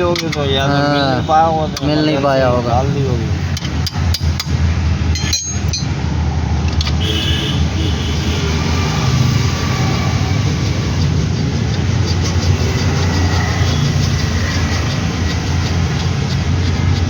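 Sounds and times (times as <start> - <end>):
low vehicle rumble: 0.0 - 17.0
sharp metallic clinks: 3.5 - 6.0.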